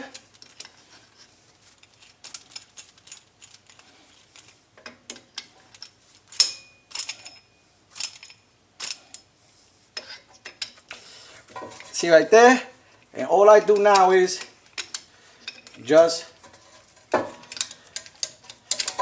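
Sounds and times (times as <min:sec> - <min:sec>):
metal clinks and taps: 0:04.4 - 0:11.9, 0:16.4 - 0:19.0.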